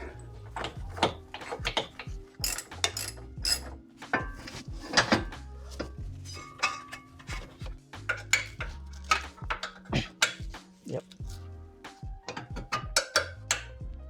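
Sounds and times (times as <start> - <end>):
metallic clinks of hand tools: 1.4 - 3.8.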